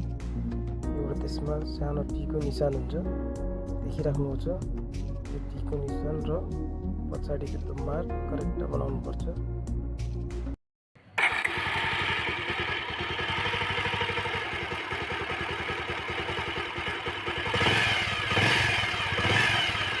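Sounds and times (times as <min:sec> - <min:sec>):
motorcycle engine idling: 0:11.2 - 0:20.0
engine revving blips: 0:17.4 - 0:20.0.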